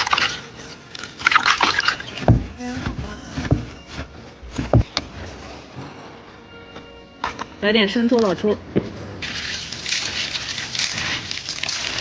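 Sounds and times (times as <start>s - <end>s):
food pouring into bamboo tube: 9.2s - 12.0s.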